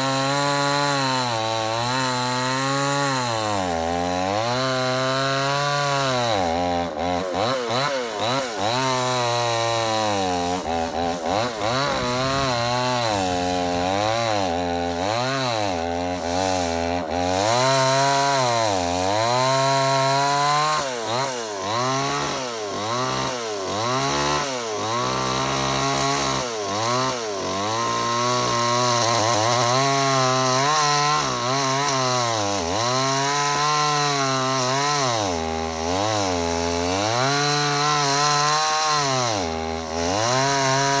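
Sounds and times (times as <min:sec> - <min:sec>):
chainsaw cutting log: 0:00.0 - 0:41.0.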